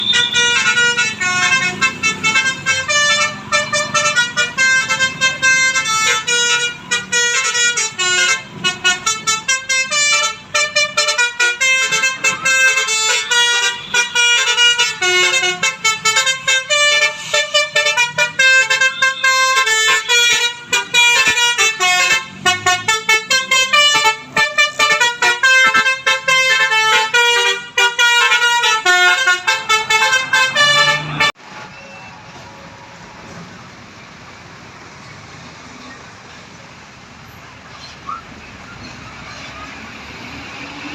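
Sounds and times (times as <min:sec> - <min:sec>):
bus horn playing fast melody: 0:00.0 - 0:31.4.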